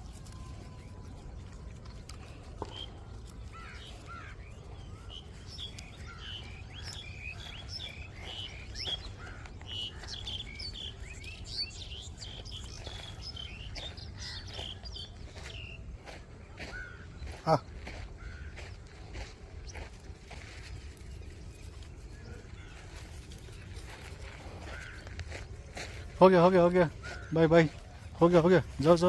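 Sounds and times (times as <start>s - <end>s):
small birds chirping: 0.0s - 29.0s.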